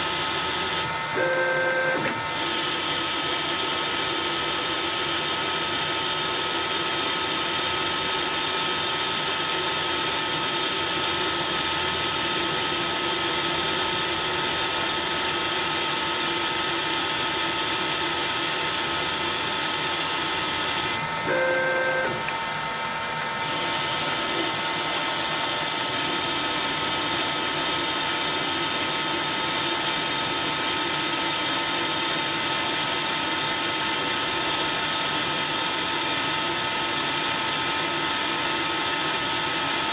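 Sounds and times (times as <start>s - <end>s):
lathe running with a whine: 0.0s - 39.9s
short tones: 21.2s - 22.3s.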